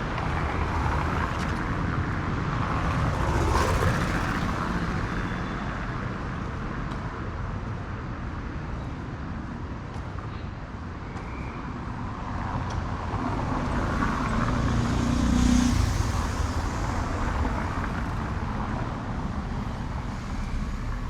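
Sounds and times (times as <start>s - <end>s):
traffic rumble: 0.0s - 11.0s, 11.8s - 21.0s
vehicle passing by: 0.3s - 5.2s, 13.4s - 21.0s.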